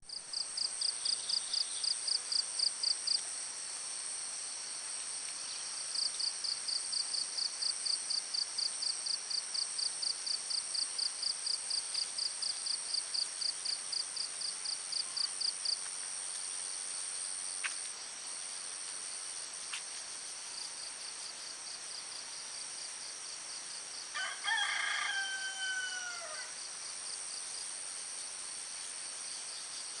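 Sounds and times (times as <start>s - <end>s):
rooster crowing: 24.1s - 26.6s.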